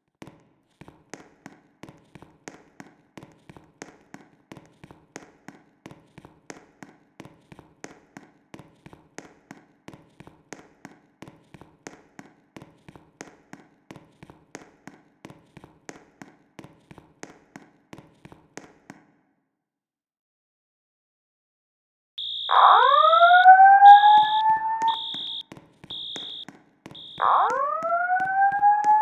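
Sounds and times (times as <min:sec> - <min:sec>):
distant fire alarm bell ringing: 0:22.2 - 0:26.4.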